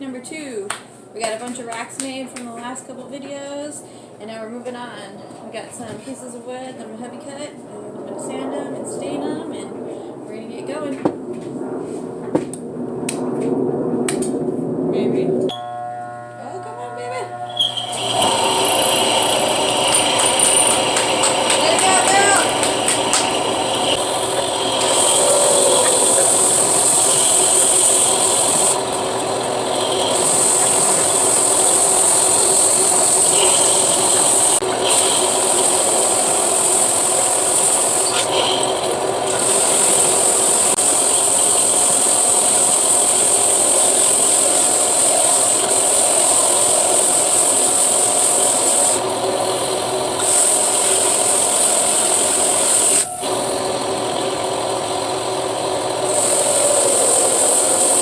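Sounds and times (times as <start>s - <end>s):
belt sander on wood: 16.7s - 58.0s.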